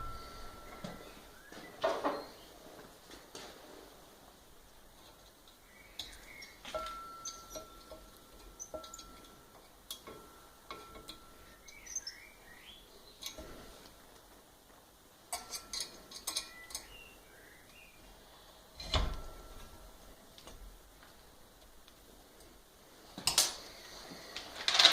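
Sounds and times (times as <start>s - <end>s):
metallic clinks of steel parts: 6.7s - 12.1s, 15.3s - 17.0s.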